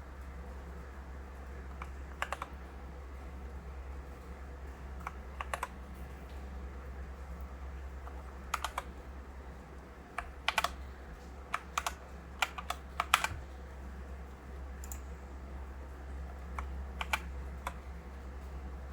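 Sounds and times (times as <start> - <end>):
mechanical keyboard typing: 1.7 - 2.6, 5.0 - 5.8, 8.1 - 9.0, 10.2 - 10.8, 11.5 - 13.5, 16.3 - 17.9.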